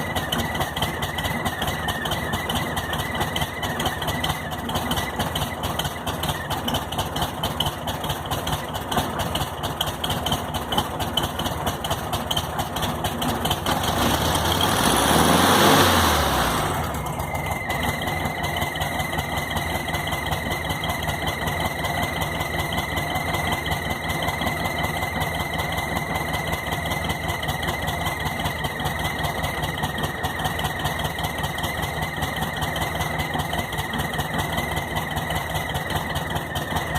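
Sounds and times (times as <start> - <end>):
car engine idling and revving: 0.0 - 36.9
high-pitched air whistle: 15.8 - 23.2.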